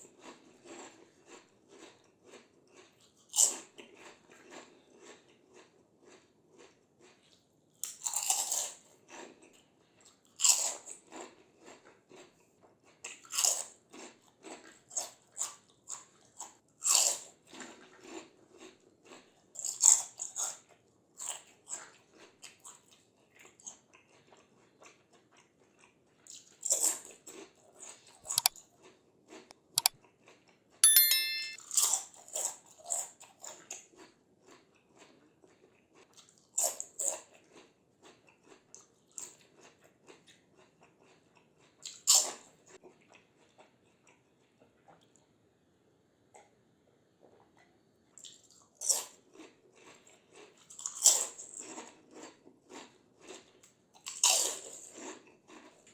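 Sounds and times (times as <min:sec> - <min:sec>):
chewing crunches: 0:00.0 - 0:20.5, 0:28.3 - 0:28.7, 0:34.5 - 0:44.2, 0:47.3 - 0:55.9
crunching bites of crispy snacks: 0:00.0 - 0:20.6, 0:34.4 - 0:44.2, 0:48.2 - 0:55.8.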